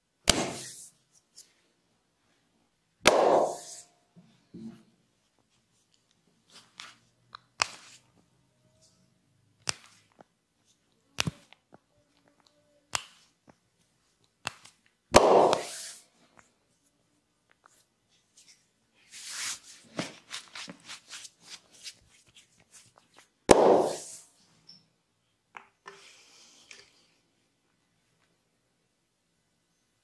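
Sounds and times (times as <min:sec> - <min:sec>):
hand slaps on bare skin: 0:03.1 - 0:03.8, 0:15.2 - 0:15.9, 0:23.5 - 0:24.2
clicks and pats on skin: 0:05.9 - 0:08.1, 0:09.6 - 0:10.3, 0:12.9 - 0:13.6.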